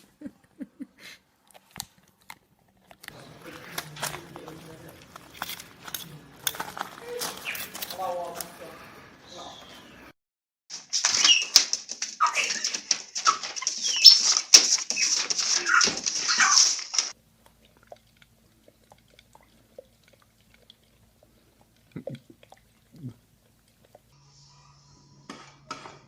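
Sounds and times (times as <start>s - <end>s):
dog whining and calling: 11.1s - 17.1s.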